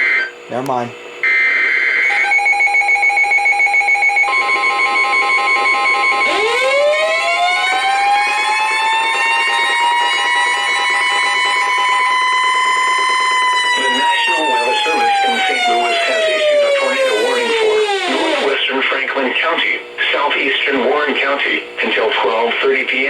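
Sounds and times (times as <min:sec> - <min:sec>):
steady warning tone: 0:02.0 - 0:23.0
siren-like rising tone: 0:03.8 - 0:18.6
rapidly pulsing beep: 0:09.2 - 0:18.6
screeching digital header tones: 0:11.6 - 0:18.6.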